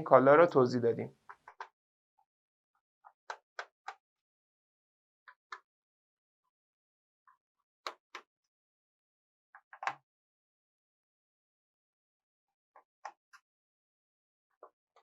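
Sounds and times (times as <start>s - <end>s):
screwdriver clicks and taps: 9.8s - 10.0s.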